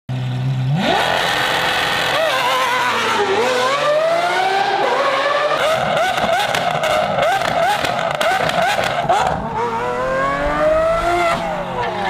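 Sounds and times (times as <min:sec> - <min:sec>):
sports car engine revving: 0:00.1 - 0:12.0.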